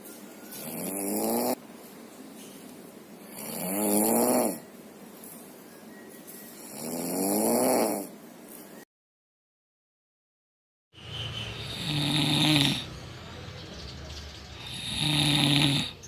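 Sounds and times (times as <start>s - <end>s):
buzzing snores: 0.6s - 1.6s, 3.2s - 4.7s, 6.6s - 8.2s, 11.5s - 13.0s, 14.5s - 16.0s.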